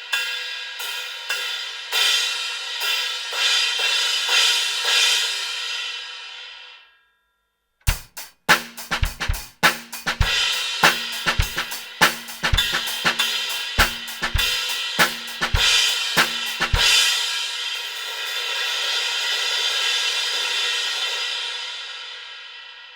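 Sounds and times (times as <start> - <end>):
kick and snare drums: 7.9 - 17.2
crash cymbal: 7.9 - 22.9.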